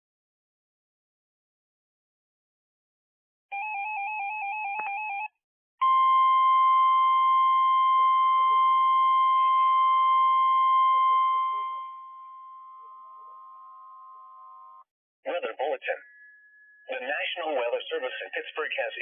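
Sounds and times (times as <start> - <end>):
steady alarm tone: 5.8 - 14.2.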